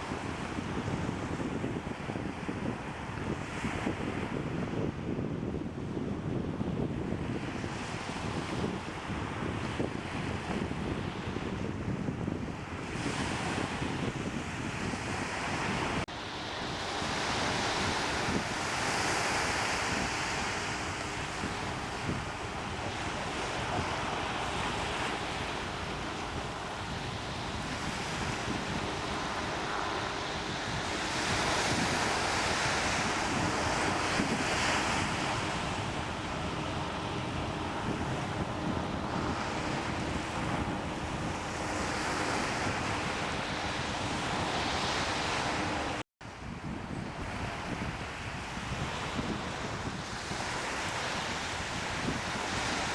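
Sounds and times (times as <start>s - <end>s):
wind rumbling on microphone: 0.0s - 52.9s
waves washing: 12.6s - 46.0s, 47.1s - 52.9s.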